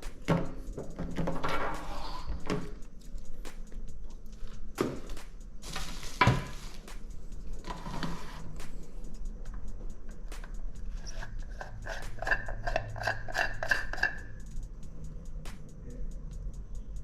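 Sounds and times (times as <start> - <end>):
parts knocking and clattering: 0.0 - 2.8, 10.4 - 14.3.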